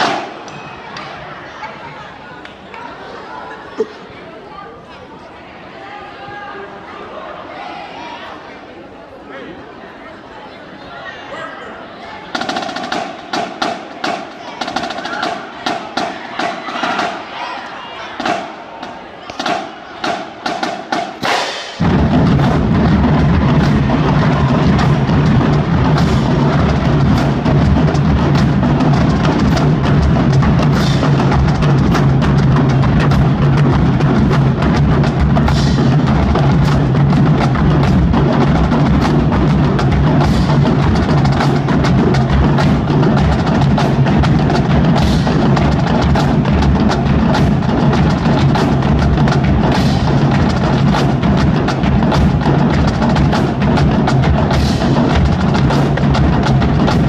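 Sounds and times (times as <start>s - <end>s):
marching drumline playing: 12.3s - 17.4s, 18.2s - 57.0s
bass drums: 19.4s - 57.0s.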